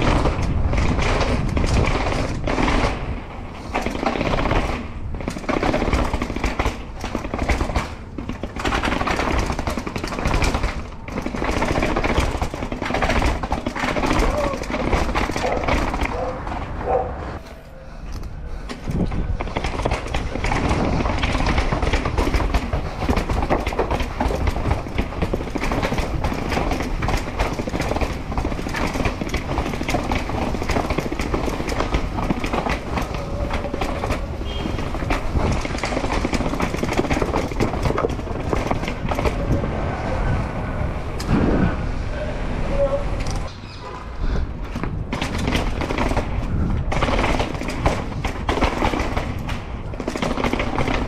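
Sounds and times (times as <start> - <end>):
mountain bike rattling and knocking: 0.0 - 17.5, 18.1 - 41.4, 42.8 - 51.0
wind rushing over microphone: 0.0 - 51.0.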